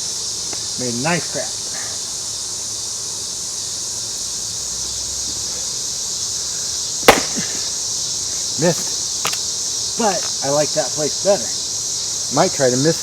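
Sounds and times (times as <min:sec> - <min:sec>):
insects chirring: 0:00.0 - 0:13.0
axe striking log: 0:07.0 - 0:07.6.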